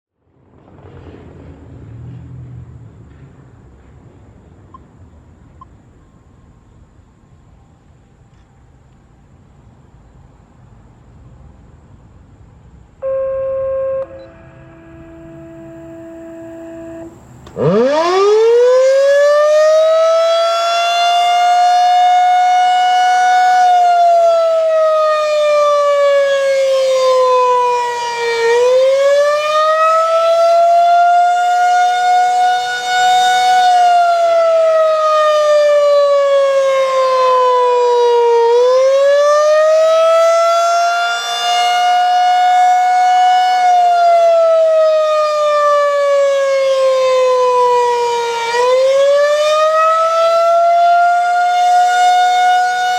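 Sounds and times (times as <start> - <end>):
warning siren wailing: 13.0 - 52.9.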